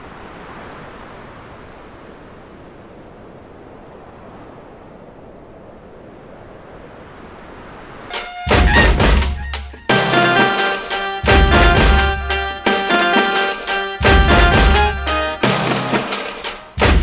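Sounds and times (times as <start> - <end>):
sea surf rushing: 7.0 - 17.0
music with sharp drum strikes: 8.1 - 17.0.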